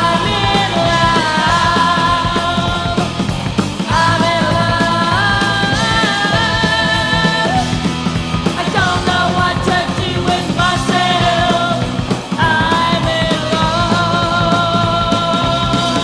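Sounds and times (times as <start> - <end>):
bass: 0.0 - 16.0
distorted electric guitars: 0.0 - 16.0
drums: 0.0 - 16.0
heavy metal song: 0.0 - 16.0.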